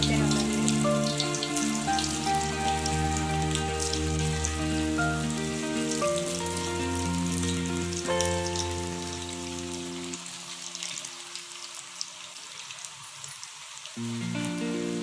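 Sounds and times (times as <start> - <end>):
background music of held chords: 0.0 - 10.8, 14.0 - 15.0
food deep-frying in hot oil: 0.0 - 15.0.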